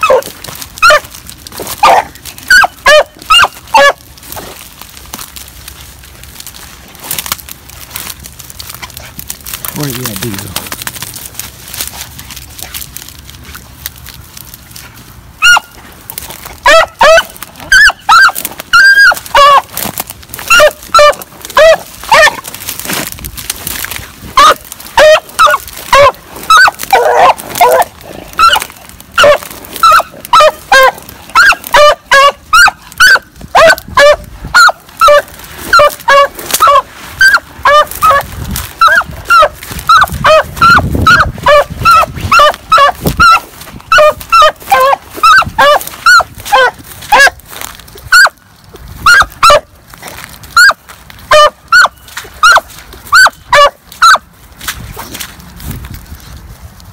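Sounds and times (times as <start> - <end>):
dog barking loudly: 0.0 - 1.1, 1.7 - 4.0, 15.4 - 15.8, 16.6 - 19.7, 20.4 - 22.4, 24.4 - 47.4, 48.1 - 48.4, 49.0 - 49.7, 50.6 - 54.2.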